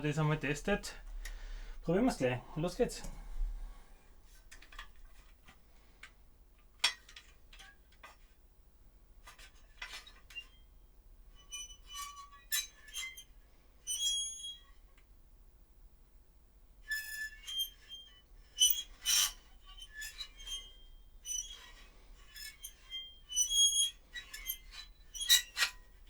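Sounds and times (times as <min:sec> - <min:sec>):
metal press squeaking: 0:22.4 - 0:25.7.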